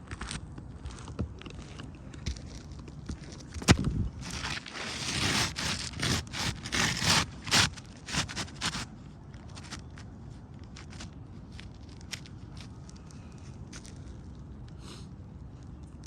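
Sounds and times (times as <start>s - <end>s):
scraping on roof shingles: 4.2s - 10.1s.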